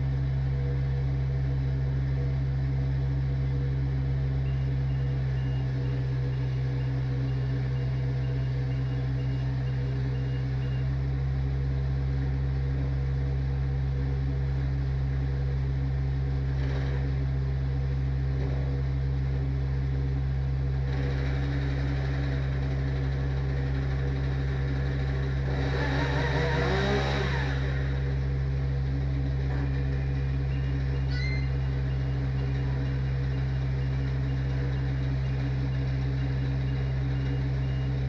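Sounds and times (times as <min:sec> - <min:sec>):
engine humming: 0:00.0 - 0:38.0.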